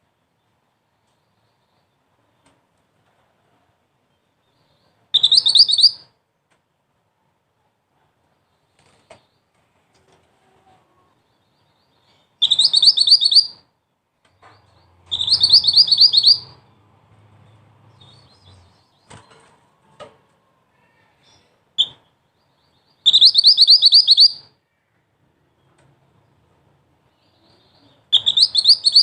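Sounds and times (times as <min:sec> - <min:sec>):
bird's sharp high chirps: 0:05.2 - 0:06.1, 0:12.0 - 0:13.6, 0:14.5 - 0:16.6, 0:21.2 - 0:24.6, 0:27.3 - 0:29.0.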